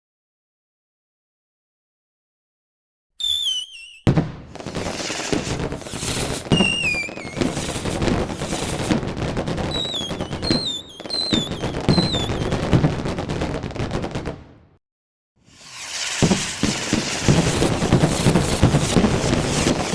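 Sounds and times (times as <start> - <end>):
whistling rockets: 3.2 - 12.8, 15.5 - 19.9
fireworks banging and crackling: 3.2 - 14.6, 15.5 - 19.9.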